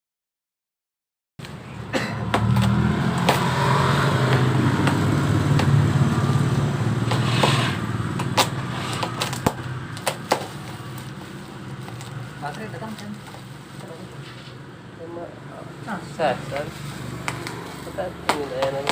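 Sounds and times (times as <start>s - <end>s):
sharp clicks and taps: 4.2s - 5.8s.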